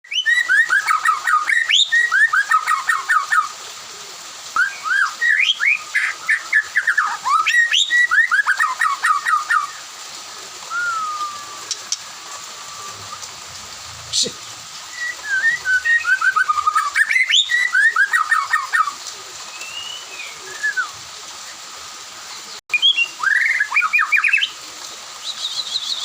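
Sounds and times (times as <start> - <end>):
bird singing whistled phrases: 0.0 - 3.5, 4.6 - 9.8, 10.6 - 13.2, 14.8 - 21.0, 22.7 - 24.6, 25.2 - 26.0.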